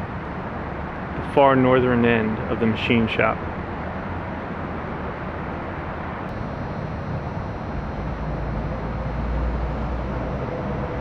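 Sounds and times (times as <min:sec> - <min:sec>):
low rumble: 0:03.4 - 0:11.0.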